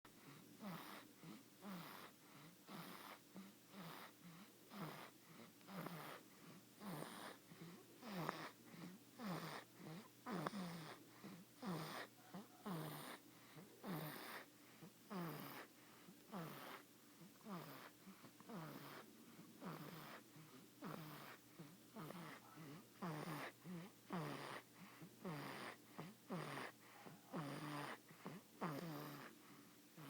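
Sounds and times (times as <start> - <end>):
baby snoring with squeaks: 0.6 - 1.0, 1.6 - 2.1, 2.7 - 6.2, 6.8 - 7.4, 8.0 - 8.6, 9.2 - 11.0, 11.6 - 13.2, 13.8 - 14.5, 15.1 - 15.7, 16.3 - 16.8, 17.4 - 20.2, 20.8 - 21.4, 22.0 - 29.3.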